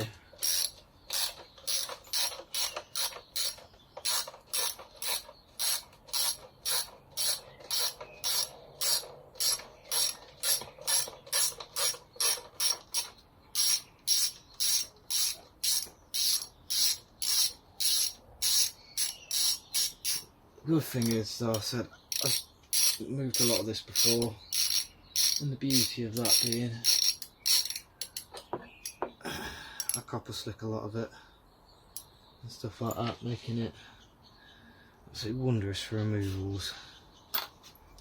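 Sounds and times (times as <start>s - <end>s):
socket ratchet clicking: 0.4s - 20.3s, 21.0s - 21.2s, 22.1s - 29.0s.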